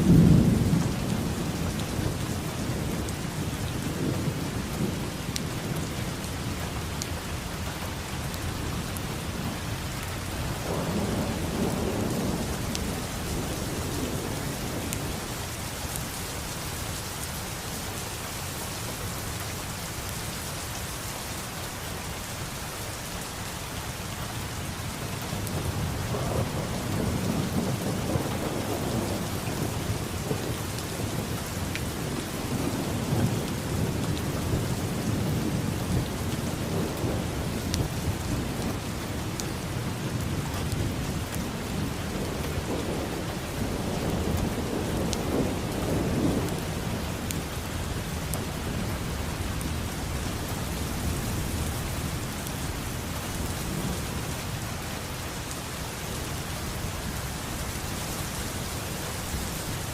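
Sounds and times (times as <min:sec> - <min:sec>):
thunder rumbling: 0:00.0 - 0:06.3, 0:10.5 - 0:15.6, 0:25.3 - 0:54.2
steady rain falling: 0:00.0 - 0:59.9.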